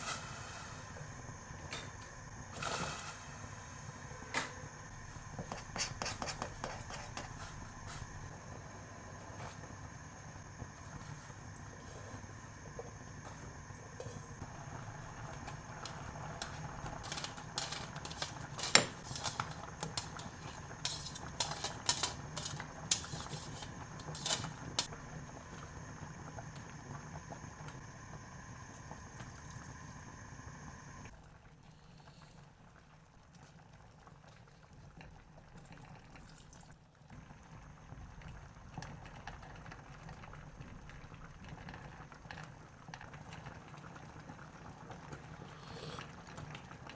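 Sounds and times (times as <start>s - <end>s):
food bubbling in a pot: 4.8s - 21.6s, 22.2s - 46.9s.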